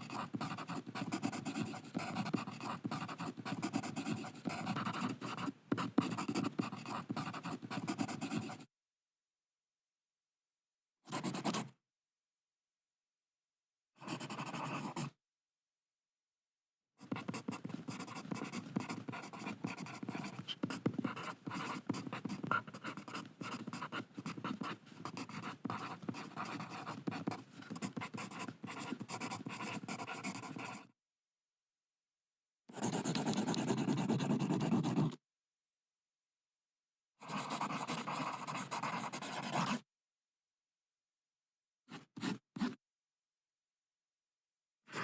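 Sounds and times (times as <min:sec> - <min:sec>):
pencil scribbling on paper: 0:00.0 - 0:08.7, 0:11.1 - 0:11.7, 0:14.0 - 0:15.1, 0:17.0 - 0:30.9, 0:32.7 - 0:35.2, 0:37.2 - 0:39.8, 0:41.9 - 0:42.8.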